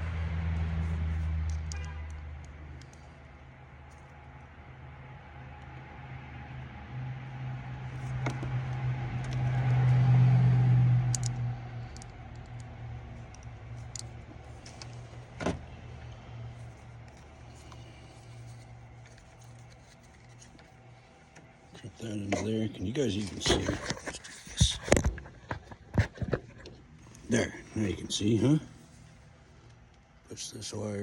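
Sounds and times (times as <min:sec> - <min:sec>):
vehicle engine humming: 0:00.0 - 0:23.8.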